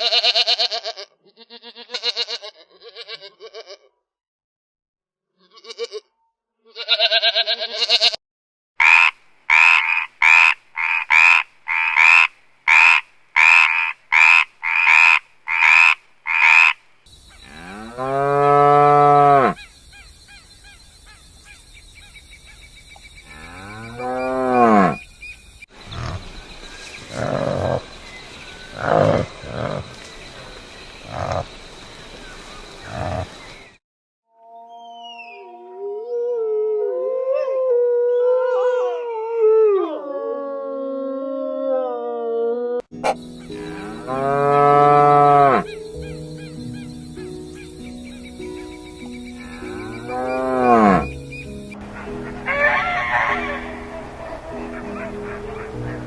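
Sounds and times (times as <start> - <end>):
evenly repeated animal calls: 8.8 - 16.8
cow mooing: 17.4 - 19.6, 23.3 - 25.0, 43.5 - 45.7, 49.4 - 51.2.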